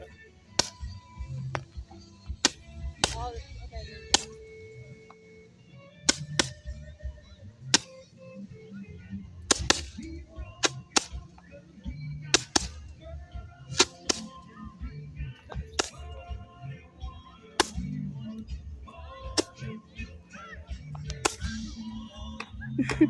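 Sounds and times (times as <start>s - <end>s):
fireworks popping: 0.0s - 5.5s, 6.1s - 13.1s, 13.7s - 14.7s, 15.4s - 16.2s, 17.6s - 18.3s, 19.4s - 19.8s, 20.8s - 23.0s.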